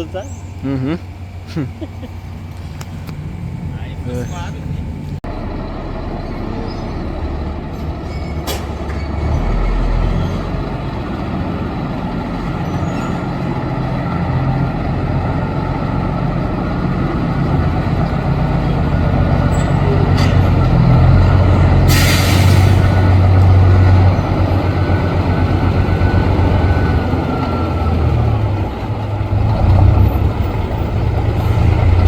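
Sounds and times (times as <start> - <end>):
diesel truck engine running: 0.0 - 32.0
compressed air hiss: 21.9 - 22.9.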